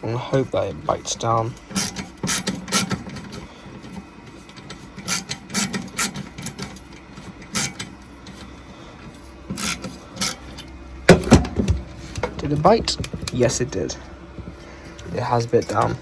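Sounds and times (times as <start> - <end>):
screw clicking and scraping in metal: 7.5 - 8.4.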